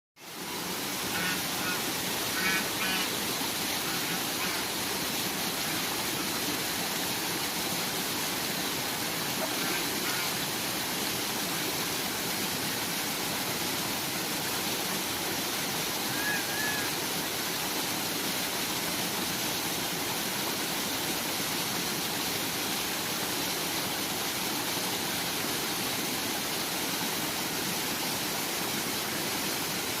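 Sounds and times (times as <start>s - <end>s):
flowing water rushing: 0.2s - 30.0s
short high calls: 16.1s - 17.0s.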